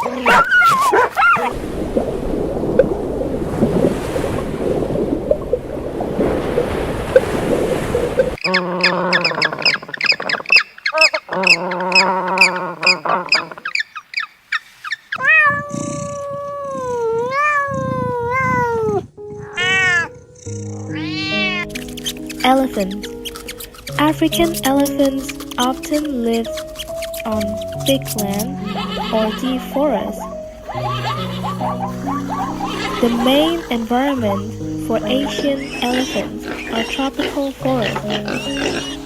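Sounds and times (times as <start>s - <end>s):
cats meowing: 15.2s - 23.8s, 26.5s - 39.0s
music: 19.2s - 39.0s
rough crackly noise: 30.1s - 39.0s.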